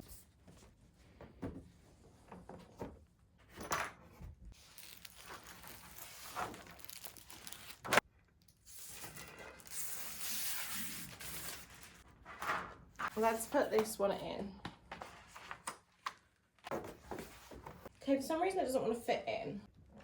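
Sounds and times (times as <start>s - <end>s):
rustling: 4.6s - 8.0s.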